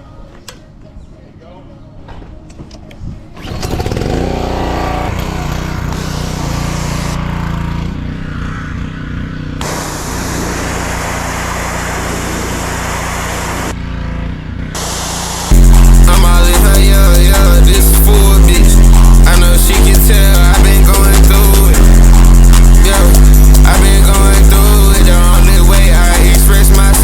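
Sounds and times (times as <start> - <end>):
motor spinning up: 3.4 - 7.3, 9.6 - 13.8
loud hiss: 9.6 - 13.8, 14.8 - 27.0.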